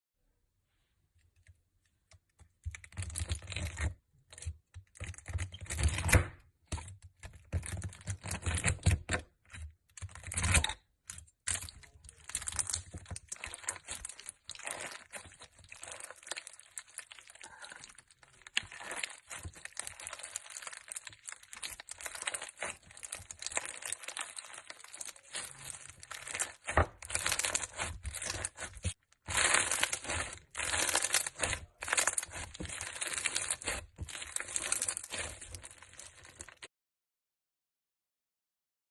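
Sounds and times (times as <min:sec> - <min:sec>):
slime crackling and popping: 0:11.3 - 0:36.7.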